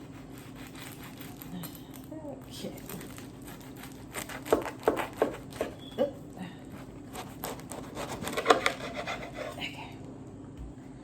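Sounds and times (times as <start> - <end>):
knife sawing crusty bread: 0.0 - 1.6, 2.8 - 5.7, 6.7 - 9.6.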